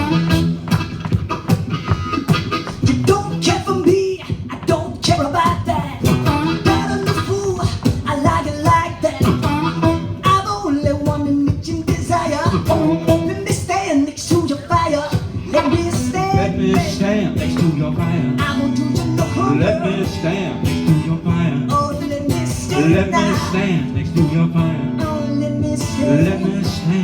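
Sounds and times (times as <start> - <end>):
harmonica wailing: 0.0 - 4.3, 5.2 - 21.0, 21.7 - 24.0
acoustic guitar strumming: 0.0 - 27.0.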